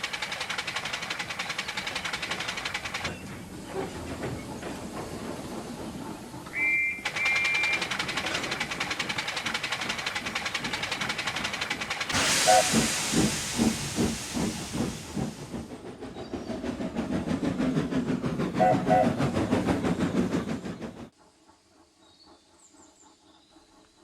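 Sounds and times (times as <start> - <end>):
steam engine chuffing: 0.0 - 23.8
two-tone steam whistle: 6.5 - 7.8, 12.2 - 13.9, 18.6 - 19.2
rush of escaping steam: 11.2 - 20.8.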